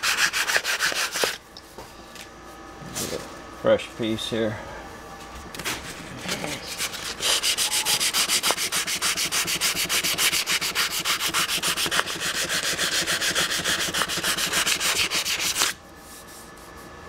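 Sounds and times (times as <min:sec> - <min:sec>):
sandpaper rubbing on wood: 0:00.0 - 0:01.4, 0:06.7 - 0:15.8.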